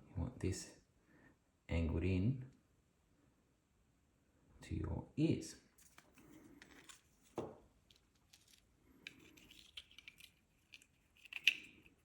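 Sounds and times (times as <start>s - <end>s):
plastic parts rubbing and scraping: 5.8s - 12.0s
small plastic clicks: 7.9s - 12.0s.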